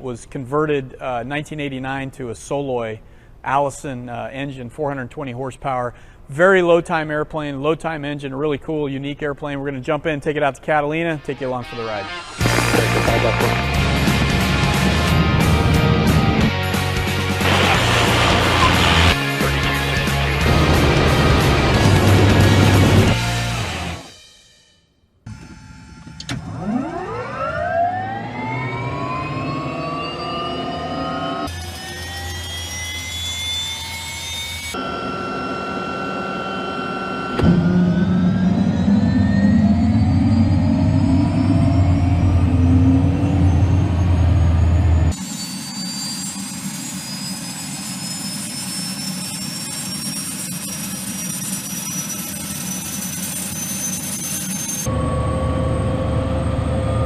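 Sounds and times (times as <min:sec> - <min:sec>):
turbine engine whine rising: 0:12.1 - 0:24.1, 0:26.4 - 0:57.0.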